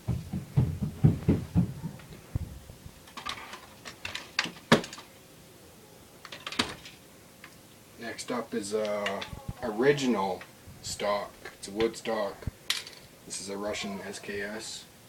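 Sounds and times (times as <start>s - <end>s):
dull knocks of rifles handled: 3.1s - 5.1s.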